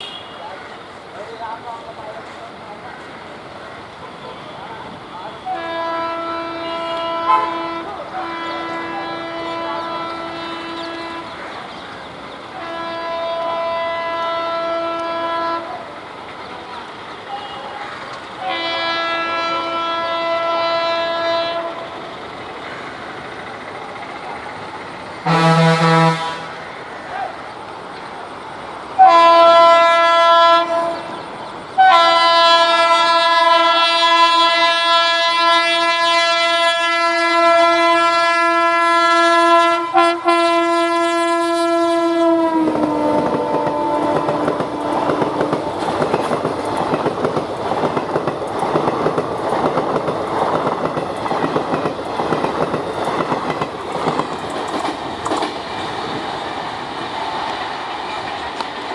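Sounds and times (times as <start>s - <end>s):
locomotive horn blasts: 0.0s - 0.5s, 5.4s - 11.4s, 12.5s - 15.8s, 17.3s - 22.0s, 25.2s - 26.8s, 29.0s - 31.2s, 31.8s - 46.3s
train wagons rumbling and clattering: 0.8s - 39.7s, 40.3s - 58.9s.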